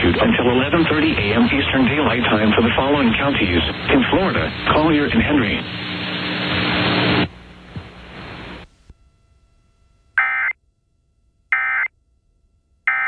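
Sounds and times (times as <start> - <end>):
radio hiss: 0.0 - 8.9.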